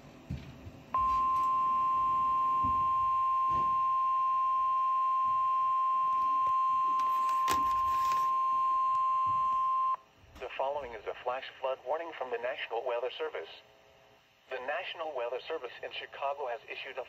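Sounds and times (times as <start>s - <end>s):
steady warning alarm tone: 1.0s - 10.0s.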